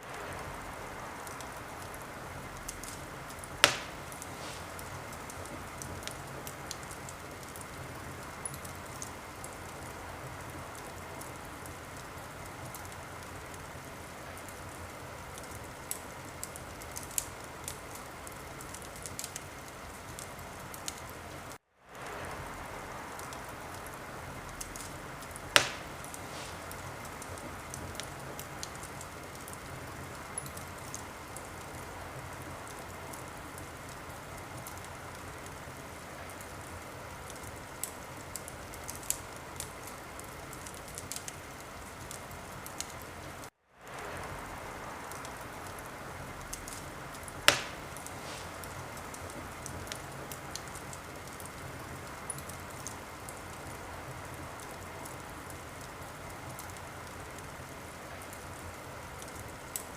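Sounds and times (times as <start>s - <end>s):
wood fire crackling: 0.0s - 59.9s
loud fire pop: 3.6s - 4.8s, 25.6s - 26.8s, 47.5s - 48.6s.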